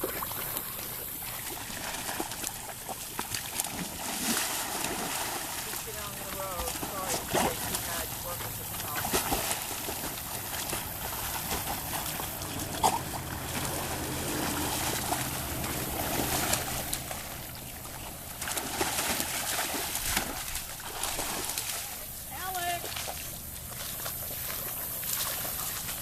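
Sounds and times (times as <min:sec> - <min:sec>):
dogs splashing through water: 0:00.0 - 0:26.0.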